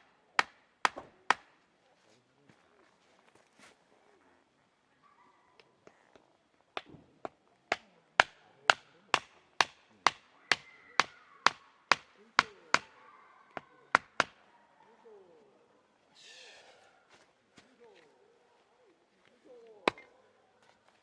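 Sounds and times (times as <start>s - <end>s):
wood chopping strikes: 0.4s - 1.5s, 6.8s - 13.0s, 13.6s - 14.4s, 19.9s - 20.1s.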